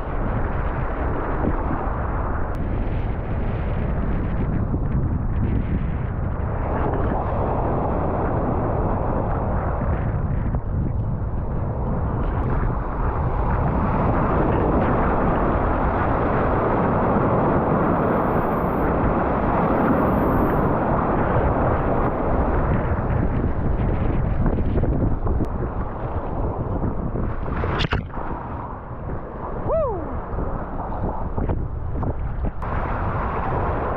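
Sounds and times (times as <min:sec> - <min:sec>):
wind buffeting microphone: 0:00.0 - 0:33.9
breaking surf: 0:32.2 - 0:33.9.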